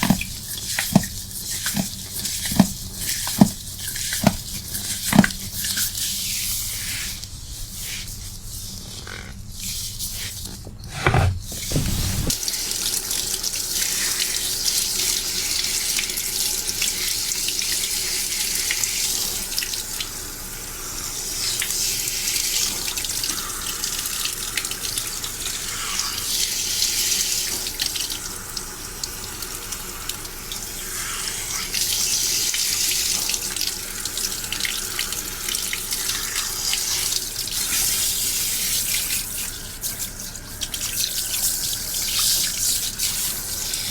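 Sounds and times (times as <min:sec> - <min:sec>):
water running from a tap: 0:00.0 - 0:10.8, 0:11.5 - 0:43.9
short thump: 0:10.6 - 0:12.4.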